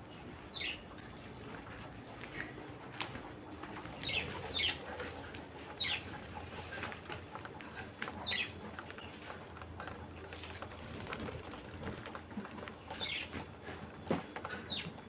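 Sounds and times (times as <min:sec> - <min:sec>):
faint bird chatter: 0:00.0 - 0:15.0
pigeons cooing: 0:00.0 - 0:15.0
budgerigars chirping: 0:04.0 - 0:06.7, 0:07.7 - 0:09.3, 0:12.9 - 0:13.4, 0:14.5 - 0:14.9.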